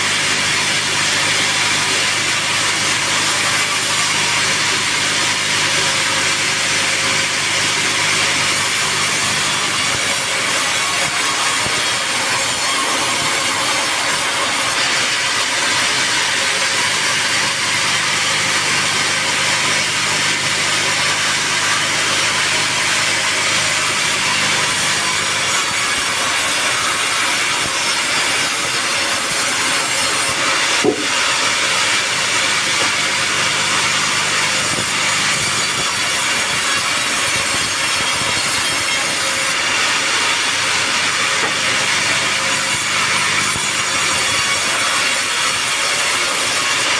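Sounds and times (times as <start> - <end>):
sawmill saw cutting log: 0.0 - 46.9
sharp knock: 30.8 - 31.2.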